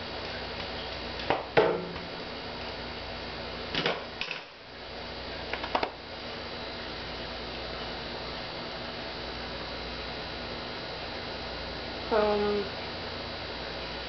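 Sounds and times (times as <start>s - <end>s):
steady background hum: 0.0s - 14.0s.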